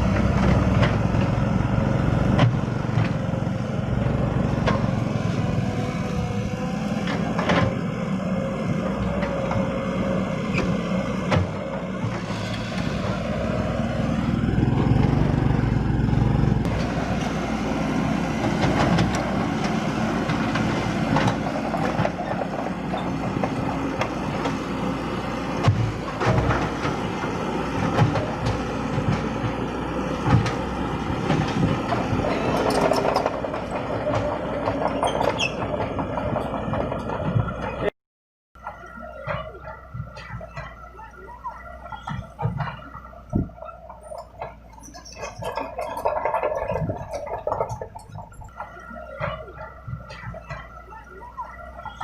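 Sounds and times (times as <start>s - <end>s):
diesel construction machinery running: 0.0s - 37.9s, 38.6s - 52.0s.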